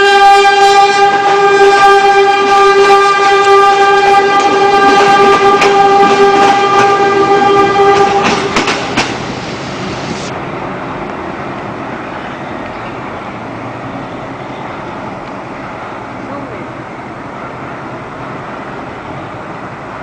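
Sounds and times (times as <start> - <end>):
train horn blast: 0.0 - 8.6
passing train running noise: 0.0 - 20.0
train wheel clicks: 7.9 - 9.2.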